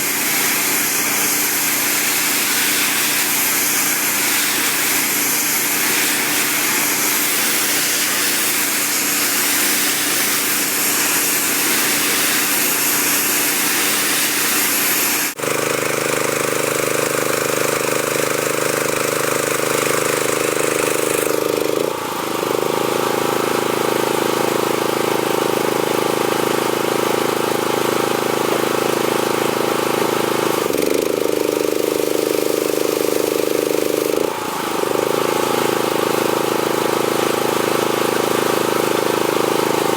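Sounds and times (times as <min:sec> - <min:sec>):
high-pressure water spray hissing: 0:00.0 - 0:21.9, 0:30.4 - 0:39.9
pressure washer engine running: 0:00.0 - 0:39.9.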